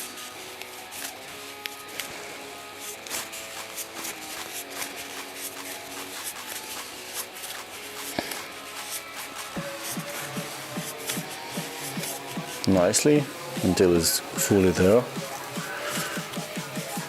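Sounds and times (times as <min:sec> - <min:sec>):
soft background music: 0:00.0 - 0:17.0.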